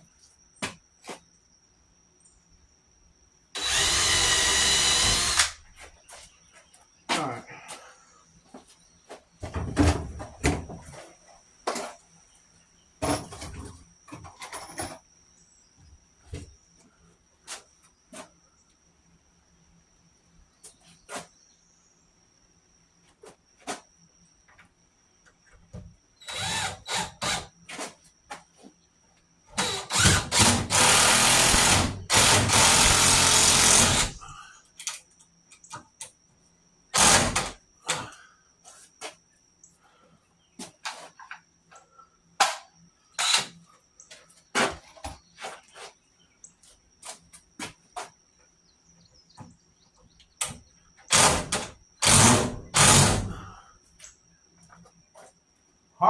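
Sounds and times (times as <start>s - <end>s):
cordless drill driving screws: 3.6s - 5.6s, 26.2s - 27.5s, 29.6s - 34.2s, 37.0s - 37.5s, 43.2s - 43.5s, 52.0s - 53.3s.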